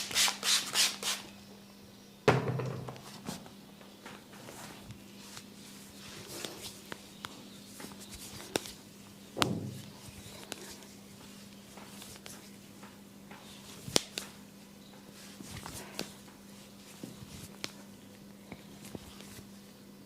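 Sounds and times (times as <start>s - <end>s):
hands rustling on skin and hair: 4.5s - 8.9s, 9.8s - 14.4s, 15.1s - 17.9s.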